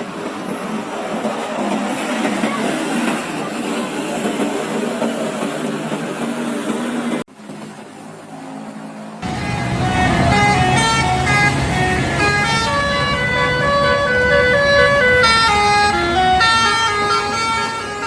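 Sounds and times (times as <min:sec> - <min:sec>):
multi-tone bus horn tune: 0:09.2 - 0:18.0.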